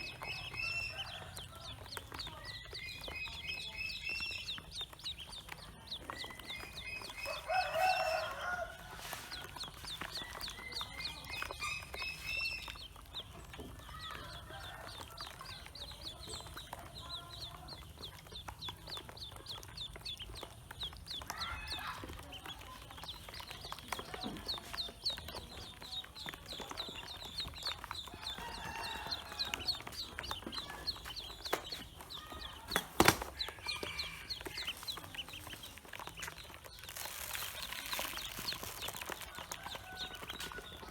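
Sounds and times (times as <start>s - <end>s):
ducklings peeping: 0.0s - 40.9s.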